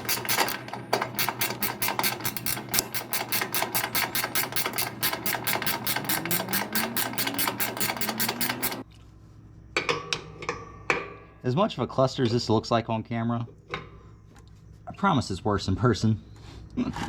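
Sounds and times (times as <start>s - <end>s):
socket ratchet clicking: 0.0s - 8.9s.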